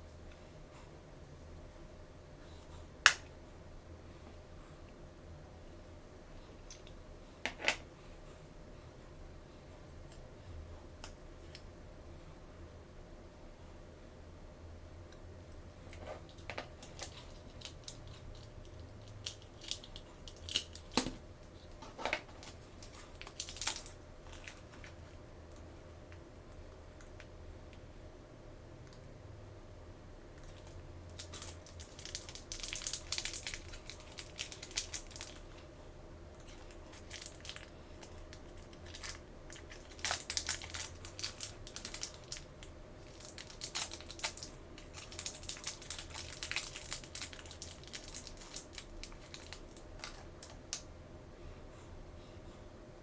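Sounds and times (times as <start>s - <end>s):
faint steady hum: 0.0s - 53.0s
packaging crinkling and tearing: 22.2s - 24.9s, 30.6s - 35.6s, 36.4s - 50.6s.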